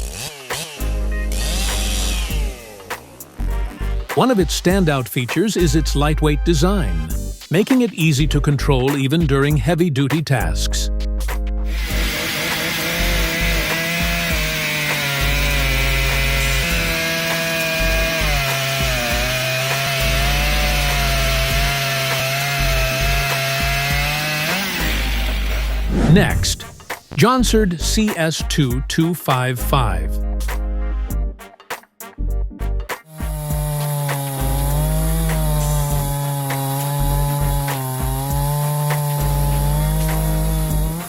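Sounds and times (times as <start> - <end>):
chainsaw cutting wood: 0.0 - 4.4, 11.7 - 27.2, 33.0 - 41.0
music with pulsing bass: 0.8 - 2.7, 3.4 - 4.9, 5.7 - 7.4, 10.8 - 12.0, 29.9 - 31.4, 32.2 - 33.7.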